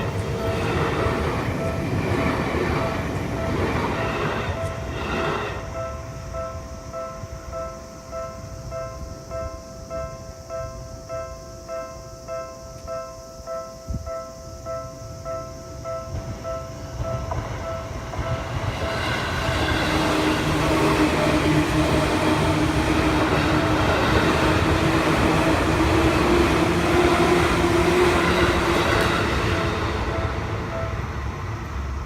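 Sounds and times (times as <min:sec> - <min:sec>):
train wheels rumbling: 0:00.0 - 0:07.8, 0:15.3 - 0:32.0
crossing warning bell: 0:00.0 - 0:32.0.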